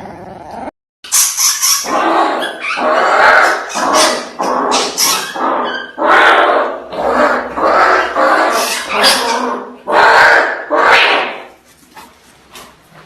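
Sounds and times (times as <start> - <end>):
dog barking and growling: 0.0 - 0.7, 1.6 - 11.6.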